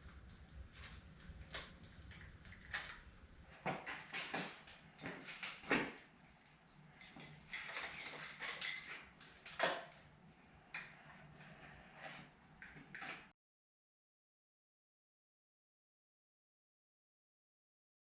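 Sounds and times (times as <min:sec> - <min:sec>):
metal parts and tools clattering: 0:07.2 - 0:10.0.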